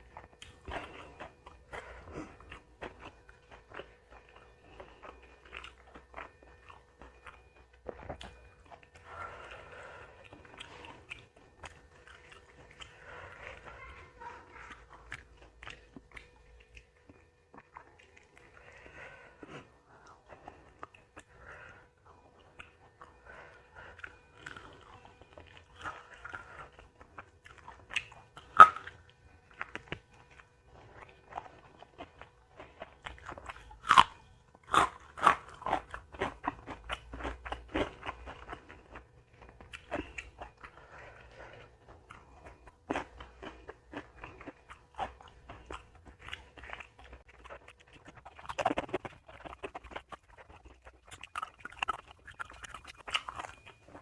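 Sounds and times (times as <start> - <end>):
person chewing crunchy food: 0.0 - 54.0.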